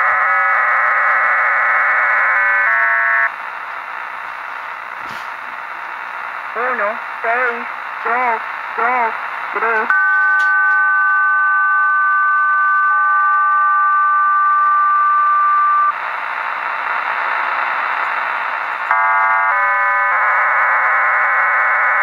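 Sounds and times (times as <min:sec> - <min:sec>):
radio hiss: 0:03.2 - 0:10.0, 0:13.6 - 0:22.0.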